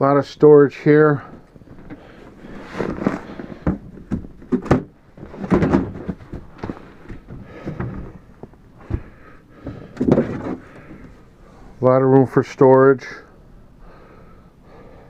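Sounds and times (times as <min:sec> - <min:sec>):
handling noise: 0:01.6 - 0:11.3.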